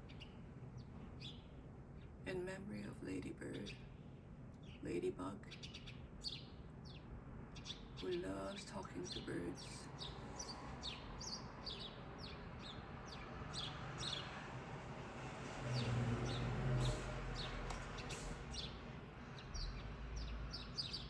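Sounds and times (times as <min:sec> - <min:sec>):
small birds chirping: 0:00.0 - 0:14.5, 0:15.7 - 0:21.0.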